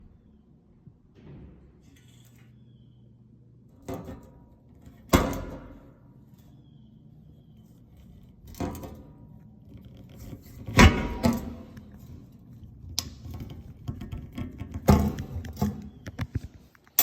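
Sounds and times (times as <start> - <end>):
knocks and clatters of handling: 8.0 - 17.0.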